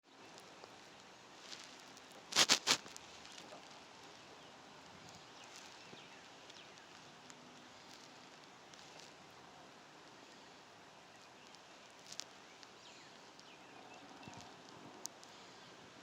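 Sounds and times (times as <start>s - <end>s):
faint steady hiss: 0.0s - 16.0s
faint high chirps and ticks: 2.9s - 16.0s.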